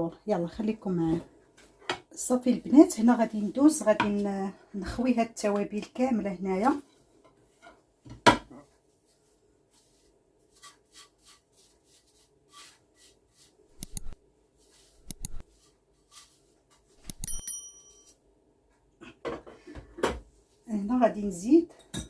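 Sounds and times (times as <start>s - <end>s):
bell-like clink: 17.2s - 18.2s.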